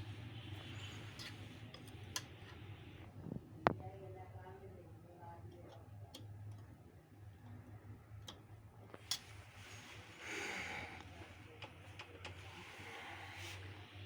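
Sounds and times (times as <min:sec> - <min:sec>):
steady low hum: 0:00.0 - 0:14.0
faint clicks and taps: 0:00.6 - 0:03.9, 0:05.3 - 0:09.6, 0:11.0 - 0:12.6.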